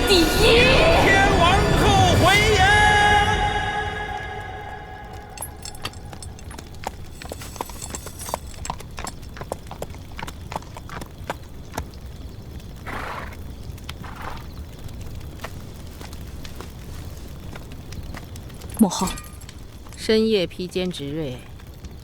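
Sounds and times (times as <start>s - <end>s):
horse hooves clopping: 5.3s - 20.0s.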